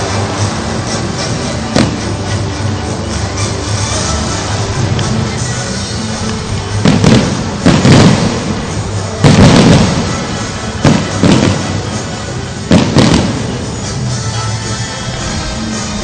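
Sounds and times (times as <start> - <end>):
fireworks booming: 0.0 - 2.4, 6.2 - 14.0
music: 0.0 - 16.0.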